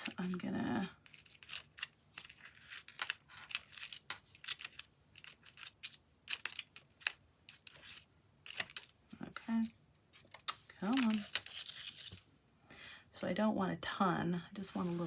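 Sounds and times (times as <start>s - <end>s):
paper rustling: 1.0s - 8.9s, 9.6s - 12.2s.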